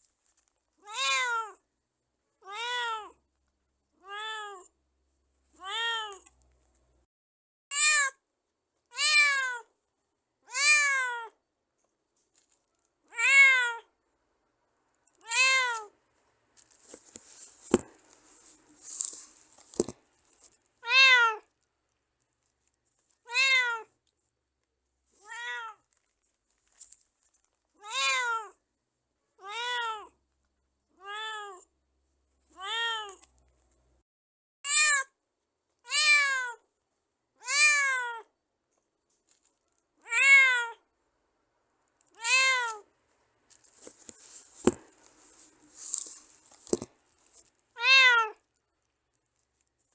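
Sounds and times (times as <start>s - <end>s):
rustling: 0.0s - 0.9s, 11.8s - 13.0s, 15.1s - 27.8s, 38.7s - 39.9s, 42.5s - 49.9s
cat meowing: 0.8s - 1.6s, 2.4s - 3.2s, 4.0s - 4.7s, 5.6s - 6.2s, 10.5s - 11.4s, 13.1s - 13.9s, 15.2s - 15.9s, 20.8s - 21.5s, 23.3s - 23.9s, 25.2s - 25.8s, 27.8s - 28.5s, 29.4s - 30.1s, 31.0s - 31.6s, 32.6s - 33.3s, 35.9s - 36.6s, 37.4s - 38.3s, 40.0s - 40.8s, 42.2s - 42.8s, 47.8s - 48.4s.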